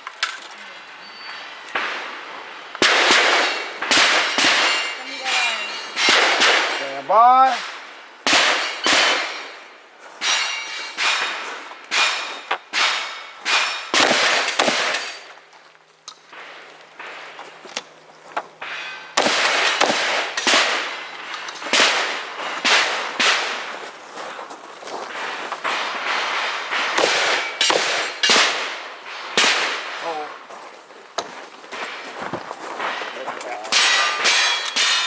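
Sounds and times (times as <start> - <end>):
gunshots: 1.7 - 9.6, 10.2 - 15.3, 18.6 - 23.8, 25.6 - 30.3, 32.9 - 35.0
steel targets clanging: 2.8 - 15.4, 18.6 - 23.8, 25.5 - 30.3, 32.9 - 35.0.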